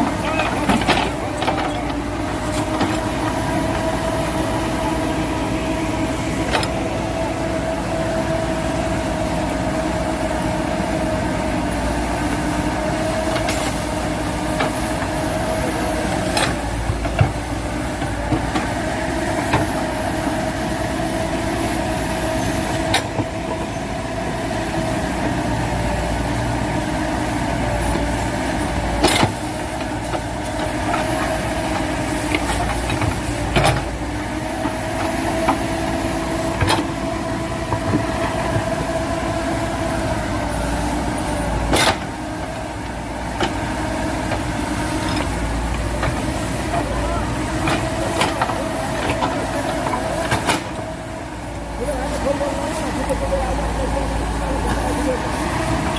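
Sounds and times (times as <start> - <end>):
diesel engine whining: 0.0 - 55.9.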